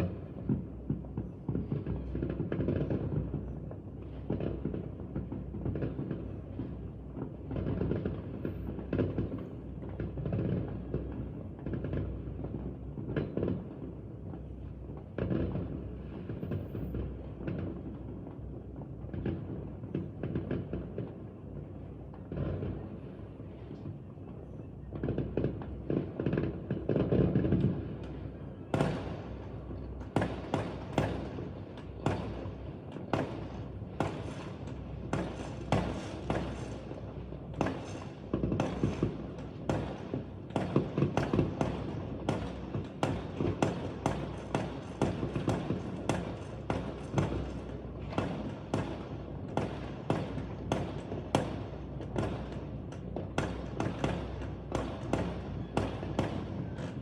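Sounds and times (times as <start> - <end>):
fireworks bangs and crackles: 0.0 - 57.0.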